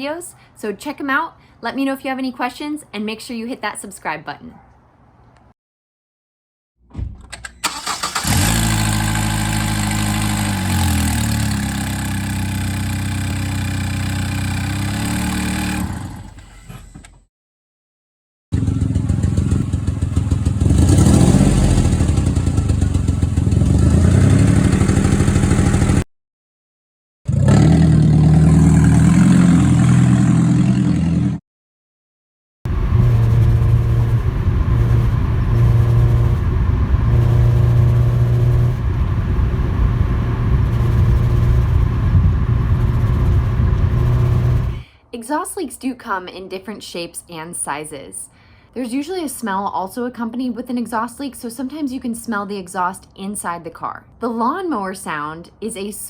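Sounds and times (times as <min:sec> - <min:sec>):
car engines with exhaust leaks: 0:07.6 - 0:17.0, 0:18.6 - 0:23.8, 0:32.7 - 0:44.8.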